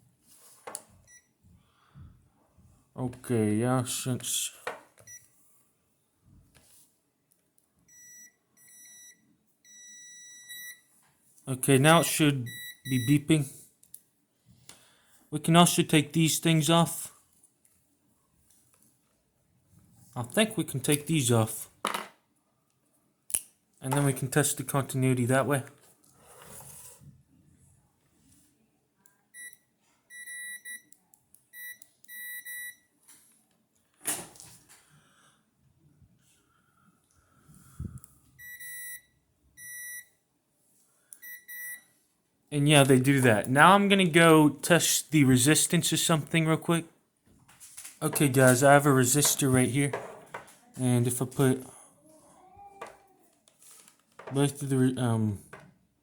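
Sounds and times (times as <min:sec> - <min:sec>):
multimeter continuity beeps: 0:07.9 - 0:10.9, 0:12.4 - 0:13.3, 0:29.4 - 0:32.9, 0:38.4 - 0:40.2, 0:41.1 - 0:42.0.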